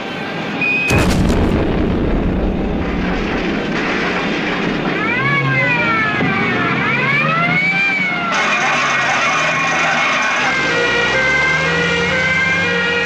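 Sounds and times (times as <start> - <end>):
explosion blast with rumbling roar: 0.9 - 6.6
fire engine sirens wailing: 4.1 - 13.0.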